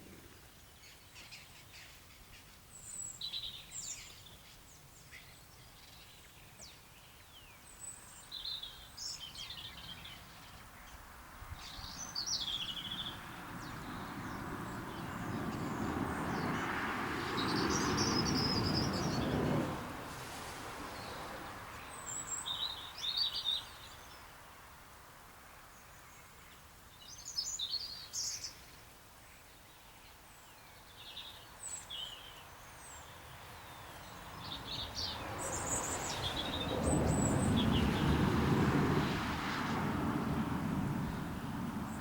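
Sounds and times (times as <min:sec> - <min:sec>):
birds chirping: 0:30.8 - 0:38.3
low rushing noise: 0:34.2 - 0:42.0.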